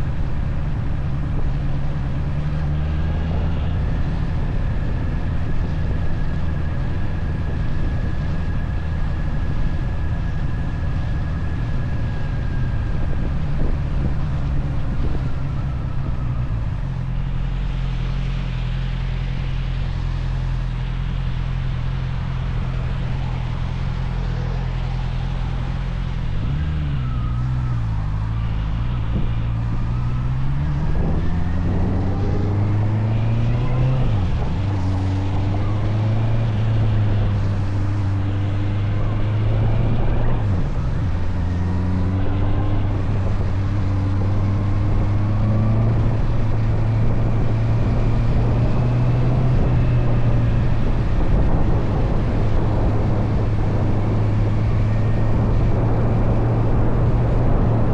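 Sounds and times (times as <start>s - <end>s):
motorcycle engine accelerating: 0.0s - 57.9s.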